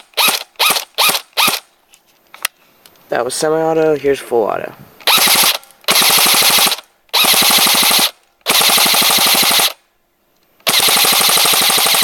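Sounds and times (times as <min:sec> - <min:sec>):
airsoft gun firing bursts: 0:00.0 - 0:01.7, 0:05.1 - 0:09.8, 0:10.6 - 0:12.0.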